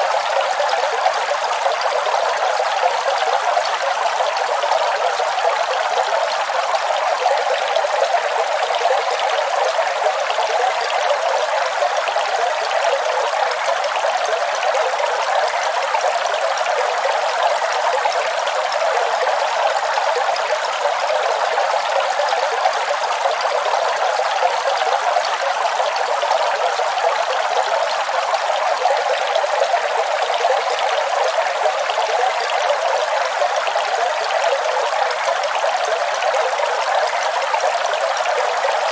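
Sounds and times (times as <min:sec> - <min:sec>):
waterfall rushing and splashing: 0:00.0 - 0:38.9.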